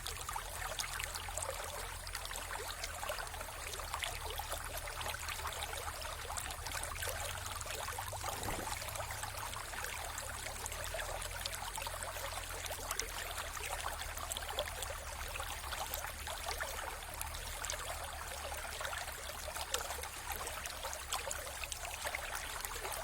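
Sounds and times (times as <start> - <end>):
river water babbling: 0.0 - 23.0
low rumble: 8.2 - 9.3.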